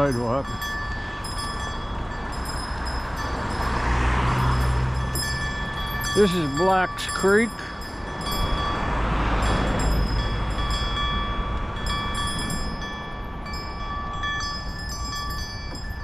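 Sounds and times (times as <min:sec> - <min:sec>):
wind and road rumble: 0:00.0 - 0:16.0.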